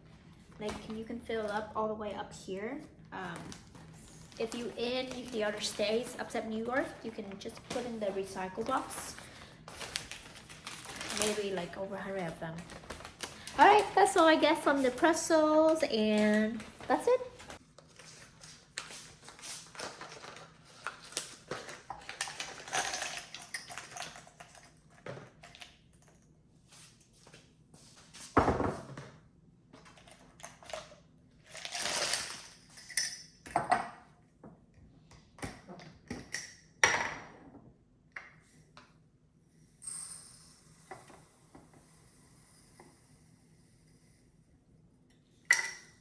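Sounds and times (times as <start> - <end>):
items set down on hard surface: 28.3 - 29.2.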